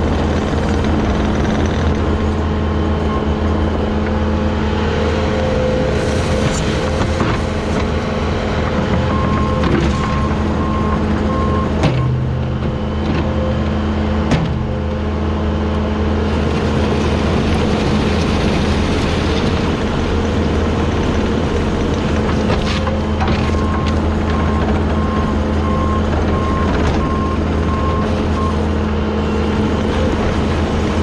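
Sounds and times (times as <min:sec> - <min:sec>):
diesel engine running: 0:00.0 - 0:31.0
reversing alarm beeping: 0:06.8 - 0:12.3, 0:23.4 - 0:29.6.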